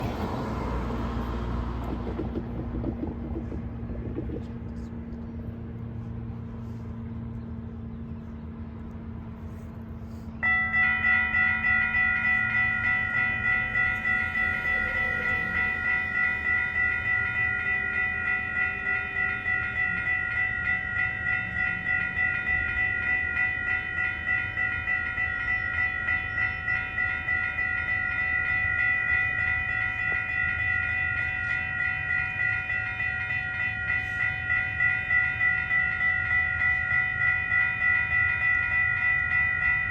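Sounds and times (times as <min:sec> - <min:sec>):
electronic railroad crossing bell: 0:00.0 - 0:04.5, 0:05.4 - 0:39.9
low background rumble: 0:00.9 - 0:10.4.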